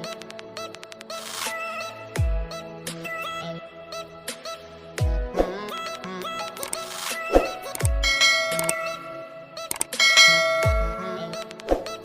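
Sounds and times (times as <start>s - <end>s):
electronic music: 0.0s - 12.0s.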